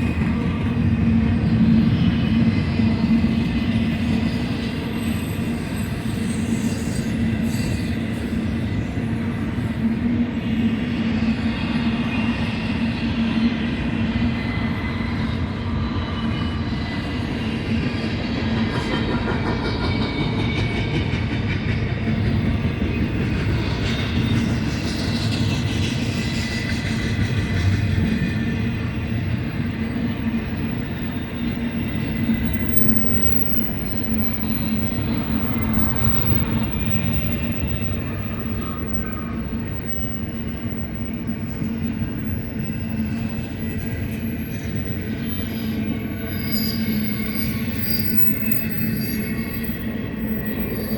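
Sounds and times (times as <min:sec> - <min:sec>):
freight train cars rumbling: 0:00.0 - 0:50.9
high-pitched wheel squeals: 0:29.4 - 0:50.9.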